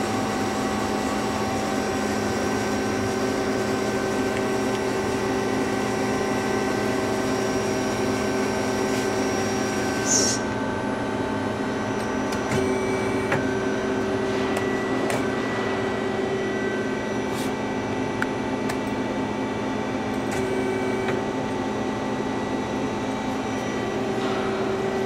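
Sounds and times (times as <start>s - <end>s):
machine hum and whine: 0.0s - 25.0s.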